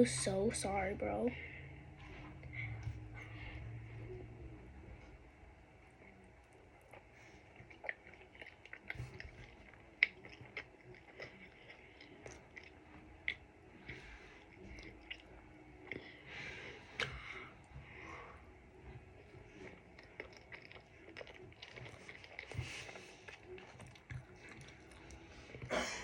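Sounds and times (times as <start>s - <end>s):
person chewing crunchy food: 5.9s - 25.9s.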